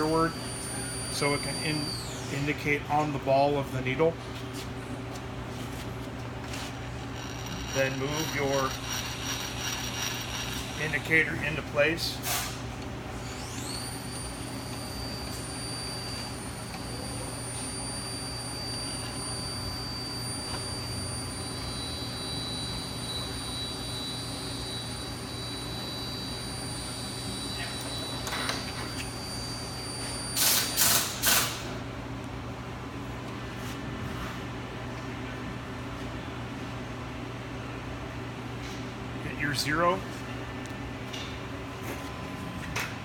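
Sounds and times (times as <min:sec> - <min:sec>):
milling machine motor whine: 0:00.0 - 0:02.6, 0:07.0 - 0:11.9, 0:13.0 - 0:30.9
low shop hum: 0:00.0 - 0:43.0.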